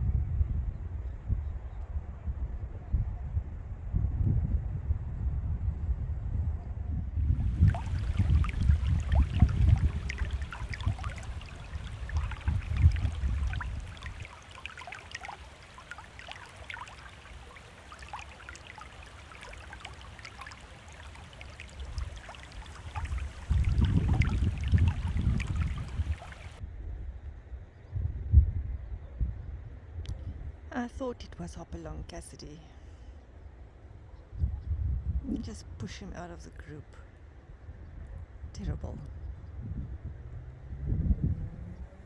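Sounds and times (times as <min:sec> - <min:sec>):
wind rumbling on the microphone: 0:00.0 - 0:32.2, 0:33.2 - 0:42.0
water trickling and splashing: 0:07.3 - 0:26.6.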